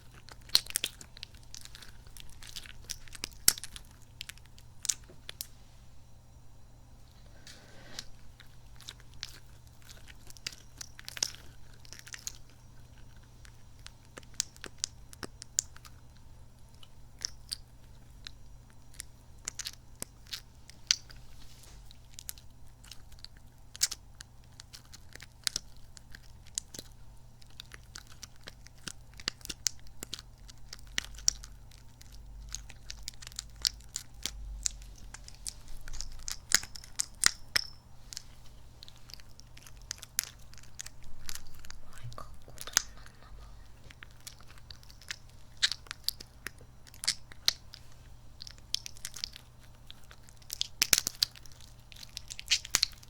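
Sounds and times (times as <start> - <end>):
squishy toy squelching and crackling: 16.8 - 53.0.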